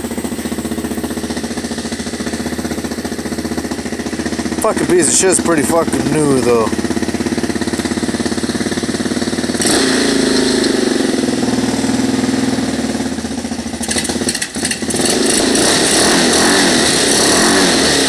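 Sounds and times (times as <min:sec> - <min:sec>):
small engine revving: 0:07.6 - 0:13.0, 0:13.8 - 0:18.0.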